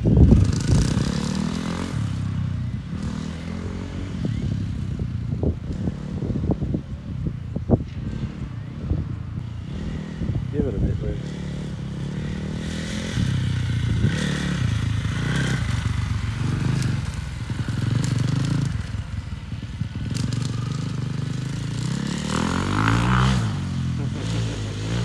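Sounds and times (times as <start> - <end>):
motocross bike engine revving: 0.0 - 4.5, 9.6 - 25.0.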